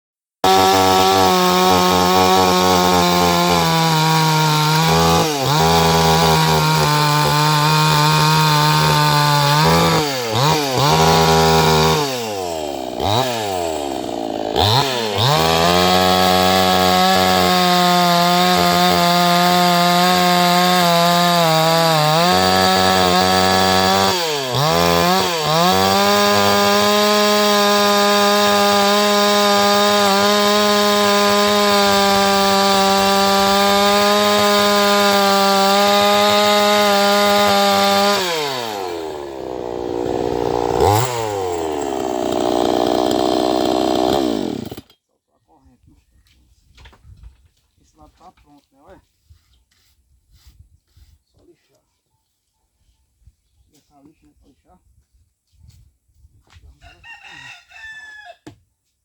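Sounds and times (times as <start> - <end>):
chainsaw cutting wood: 0.4 - 45.0.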